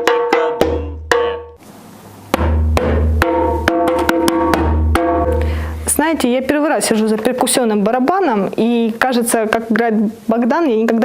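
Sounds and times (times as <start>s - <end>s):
drum stick strikes: 0.0s - 1.6s, 2.3s - 5.6s
bass drum boom: 2.3s - 5.5s.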